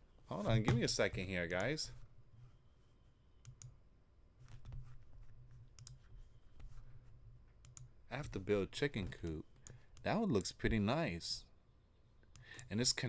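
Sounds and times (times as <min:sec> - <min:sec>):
computer clicking: 0:03.4 - 0:03.7, 0:05.8 - 0:06.0, 0:07.6 - 0:07.9.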